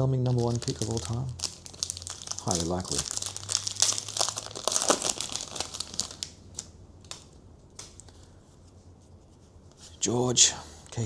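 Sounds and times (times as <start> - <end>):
wrapper tearing and crinkling: 0.3 - 8.1
cards rustling: 0.3 - 8.3.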